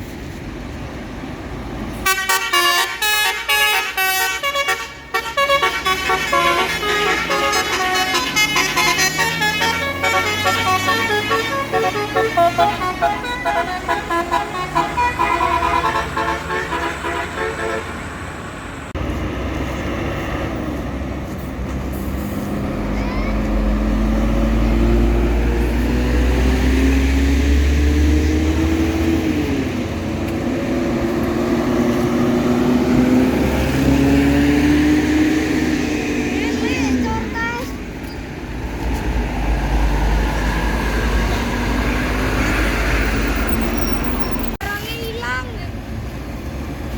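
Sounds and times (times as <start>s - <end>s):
musical bus horn melody: 2.0s - 18.1s.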